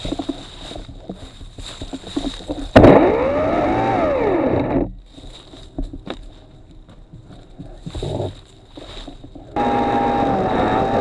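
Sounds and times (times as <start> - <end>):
electric saw motor whining: 2.8 - 4.9, 9.6 - 11.0.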